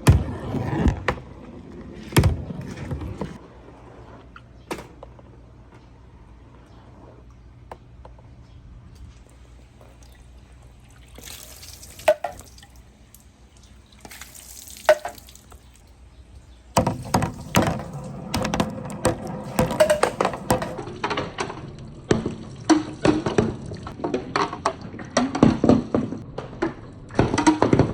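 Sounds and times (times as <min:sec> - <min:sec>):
balls rolling and clattering: 0:00.0 - 0:03.4, 0:16.8 - 0:27.9
water running down gutter: 0:09.3 - 0:24.5.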